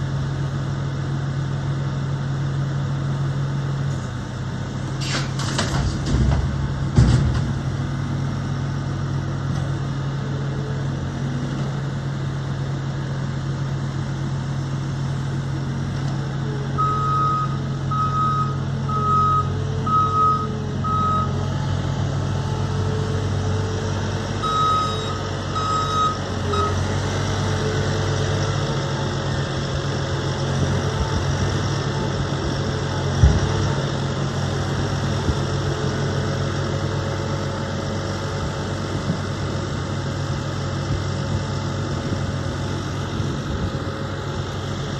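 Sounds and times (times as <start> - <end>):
heavy vehicle engine running: 0.0 - 44.9
reversing alarm beeping: 16.8 - 21.4, 24.4 - 26.8.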